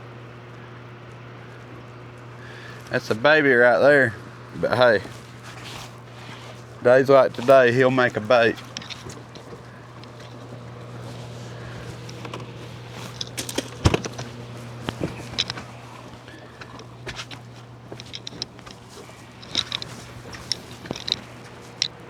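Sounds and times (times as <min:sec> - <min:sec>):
low steady hum: 0:00.0 - 0:22.0
gear knocking in metal boat: 0:11.6 - 0:22.0.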